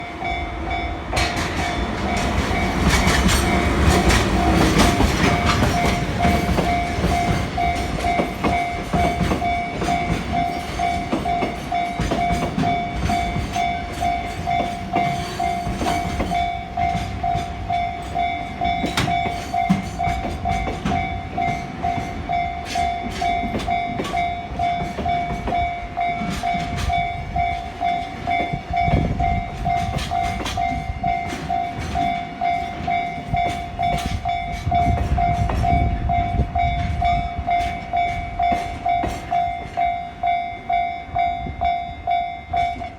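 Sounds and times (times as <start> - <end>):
freight train rolling: 0.0 - 42.9
train wheels clicking on rail joints: 0.0 - 42.9.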